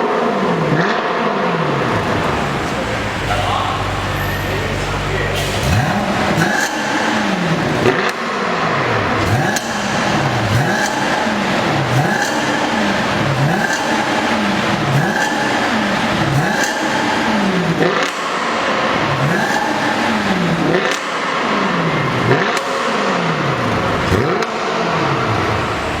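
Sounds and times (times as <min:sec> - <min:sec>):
car engine revving: 0:00.0 - 0:26.0.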